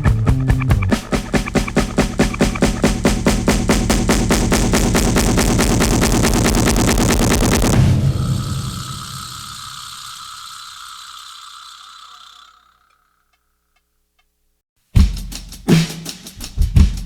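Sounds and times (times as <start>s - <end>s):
music with drum beat and bass: 0.0s - 7.9s, 14.9s - 17.0s
steady hum: 0.9s - 13.0s.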